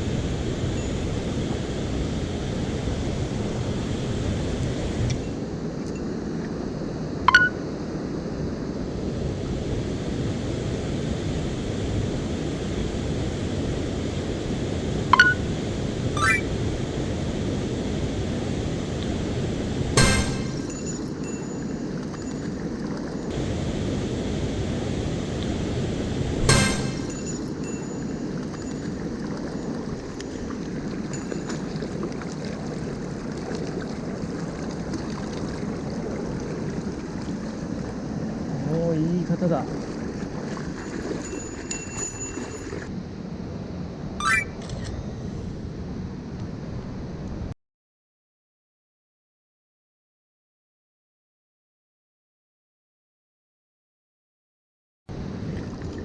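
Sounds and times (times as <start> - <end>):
sharp rising high sounds: 16.2 - 16.5, 20.0 - 20.9, 26.5 - 27.4, 44.2 - 44.6.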